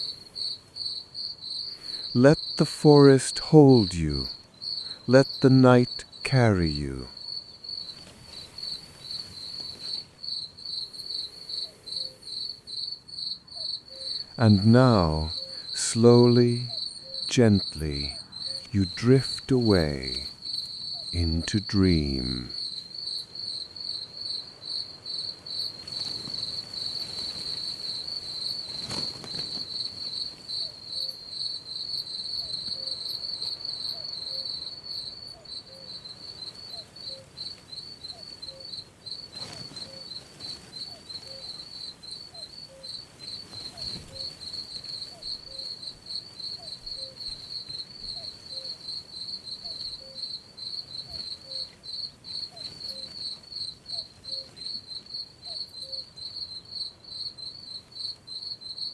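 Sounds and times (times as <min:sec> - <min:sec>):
crickets trilling: 0:00.0 - 0:58.9
lower insect chirp: 0:00.0 - 0:58.9
breeze: 0:01.7 - 0:07.2, 0:14.1 - 0:22.6.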